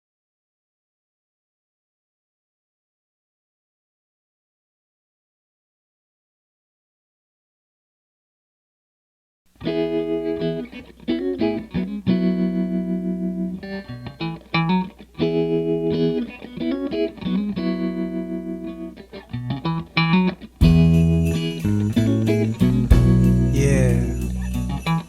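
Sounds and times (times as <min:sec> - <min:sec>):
picked guitar intro: 0:09.6 - 0:25.0
band with drums: 0:20.6 - 0:25.0.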